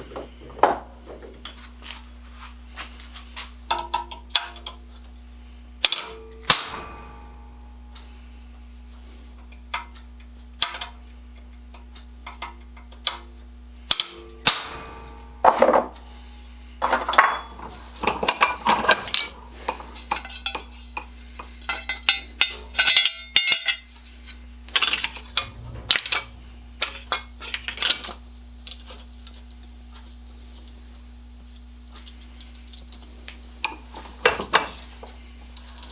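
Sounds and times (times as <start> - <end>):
low electrical hum: 0.0 - 35.9
metal tools clinking and clanking: 16.8 - 21.1.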